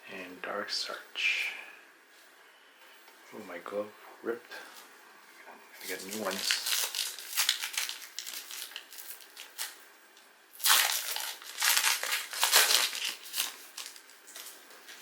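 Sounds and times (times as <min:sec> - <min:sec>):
plastic wrapper crinkling and tearing: 0:05.8 - 0:09.8, 0:10.5 - 0:15.0.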